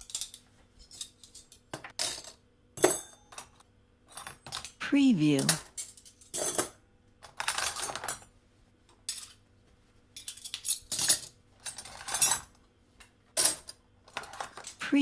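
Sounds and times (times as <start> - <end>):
metal cutlery clattering: 0.0 - 4.8, 5.4 - 8.3, 9.0 - 9.4, 10.2 - 12.6, 13.4 - 14.8.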